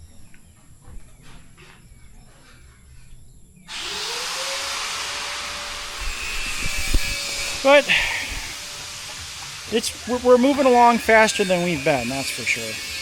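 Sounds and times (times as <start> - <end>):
power tool motor whining: 3.7 - 13.0.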